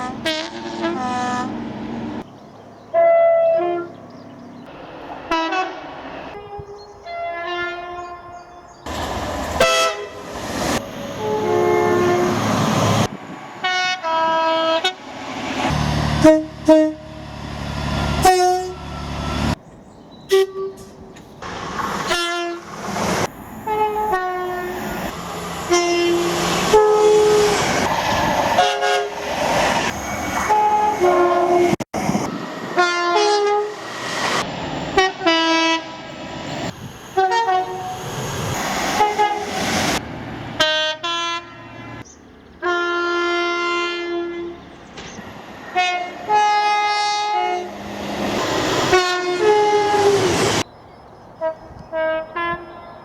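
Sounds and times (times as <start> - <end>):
two-note train horn blasts: 0.0 - 1.6, 9.6 - 10.3, 11.0 - 12.5, 15.7 - 17.2, 18.2 - 19.4, 25.7 - 27.5, 45.7 - 47.8, 48.9 - 50.4, 51.4 - 52.9
train rumbling on rails: 0.0 - 53.0.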